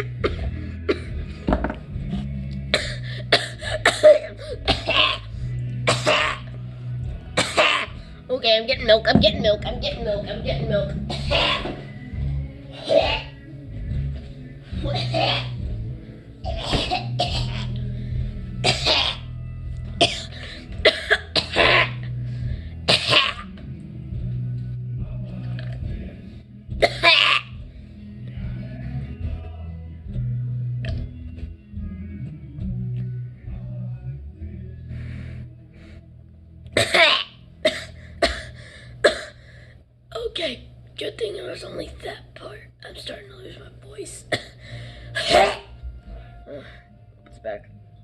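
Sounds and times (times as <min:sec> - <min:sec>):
woman coughing hard: 0:02.8 - 0:05.3, 0:05.9 - 0:06.5, 0:07.4 - 0:08.0, 0:11.1 - 0:11.8, 0:14.9 - 0:15.6, 0:16.5 - 0:17.7, 0:18.6 - 0:19.3, 0:20.0 - 0:22.0, 0:22.9 - 0:23.5, 0:26.8 - 0:27.5, 0:36.8 - 0:39.4, 0:44.3 - 0:44.6, 0:45.2 - 0:45.7.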